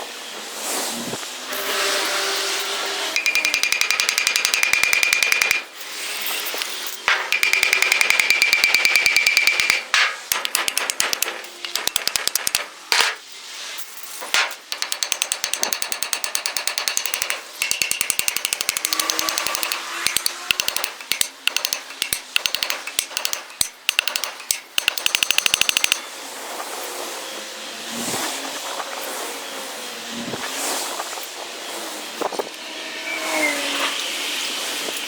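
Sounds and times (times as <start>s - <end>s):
power tool hammering: 1.5s - 13.3s, 14.2s - 26.2s
power tool running steadily: 15.0s - 26.2s.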